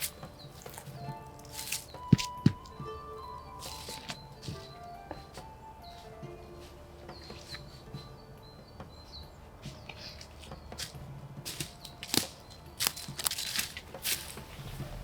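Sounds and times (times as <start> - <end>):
sticks cracking and snapping: 0.0 - 2.8, 3.6 - 4.7, 9.9 - 14.7
faint high bird chirps: 0.0 - 10.9.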